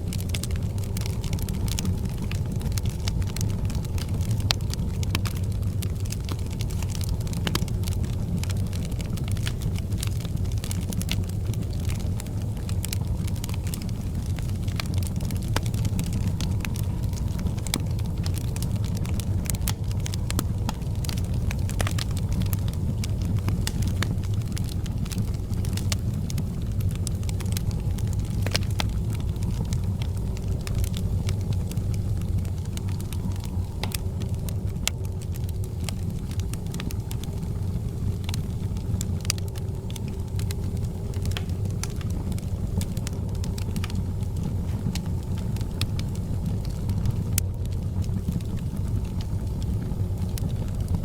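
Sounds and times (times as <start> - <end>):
fire crackling and popping: 0.0 - 51.0
fire rumbling: 0.0 - 51.0.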